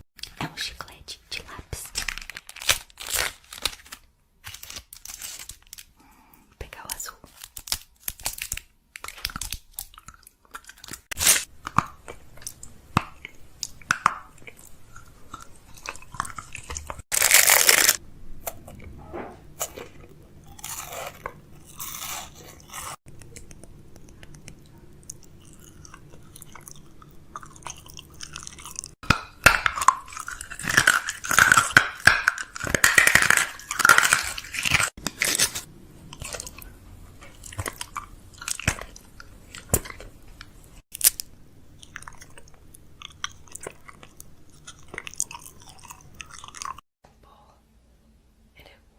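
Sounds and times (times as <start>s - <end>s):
packaging crinkling: 1.8s - 6.0s, 16.6s - 18.0s.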